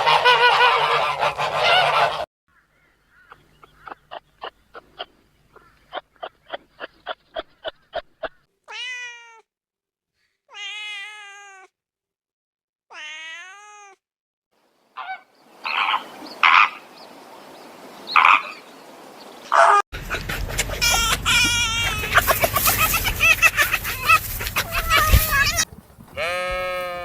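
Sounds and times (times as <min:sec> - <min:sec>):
harsh animal calls: 0:18.1 - 0:18.7, 0:19.5 - 0:27.0
fast short animal calls: 0:20.5 - 0:27.0
long drawn-out animal calls: 0:20.6 - 0:27.0.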